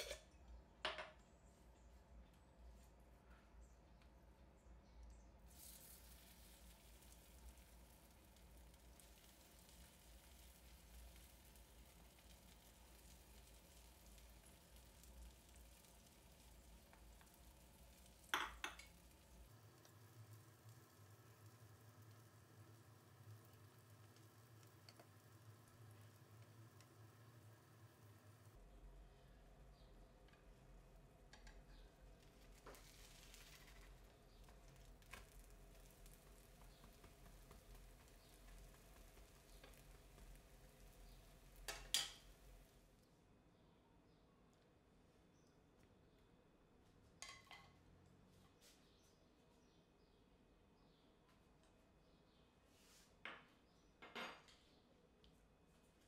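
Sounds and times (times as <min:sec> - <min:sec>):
pancakes sizzling in a pan: 0:05.4 - 0:28.6, 0:29.4 - 0:42.9.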